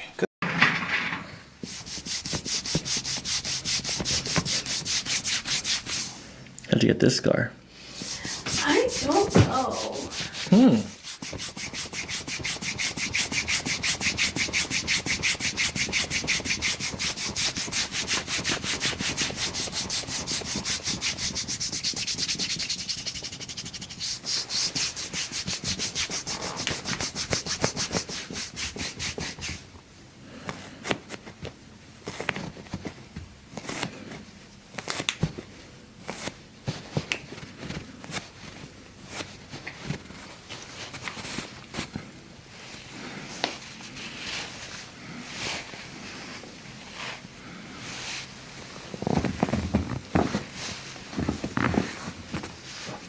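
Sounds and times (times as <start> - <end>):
fast rubbing strokes: 1.6 - 6.3, 7.8 - 29.7.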